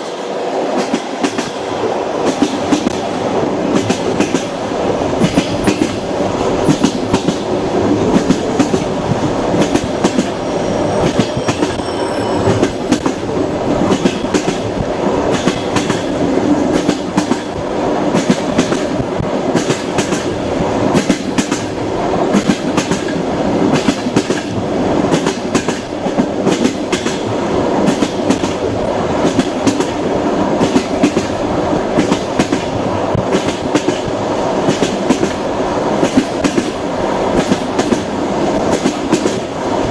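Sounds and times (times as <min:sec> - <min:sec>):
train rumble: 0:00.0 - 0:39.9
faint high wheel squeal: 0:10.6 - 0:12.8.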